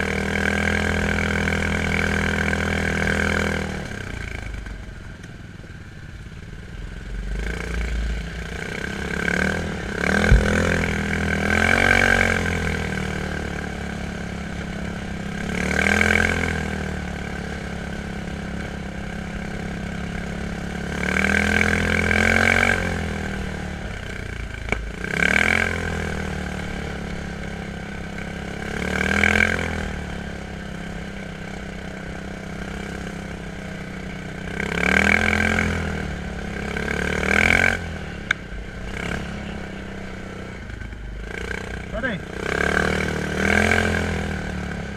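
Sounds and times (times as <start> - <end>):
quad bike engine revving: 0.0 - 4.8, 7.0 - 44.9
sharp knock: 10.2 - 10.9.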